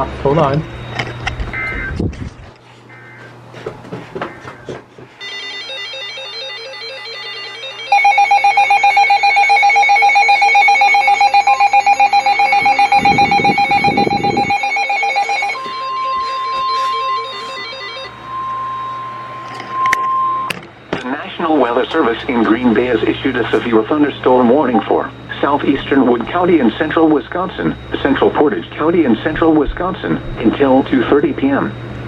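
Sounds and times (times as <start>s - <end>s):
pulsing two-pitch alarm: 0.0s - 2.0s, 5.2s - 31.9s
steady alert tone: 5.2s - 20.5s, 21.3s - 25.2s
warbling electronic pattern: 5.8s - 20.5s.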